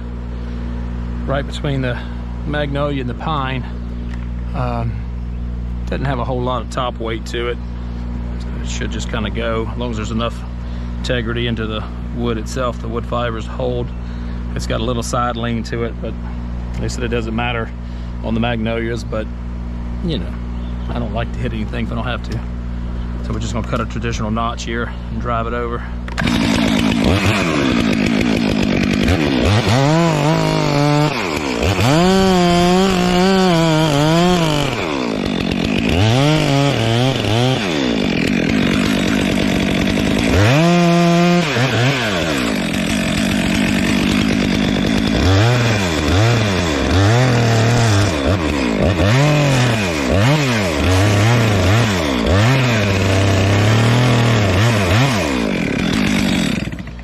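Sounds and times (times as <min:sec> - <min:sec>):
chainsaw revving: 0:23.2 - 0:57.0.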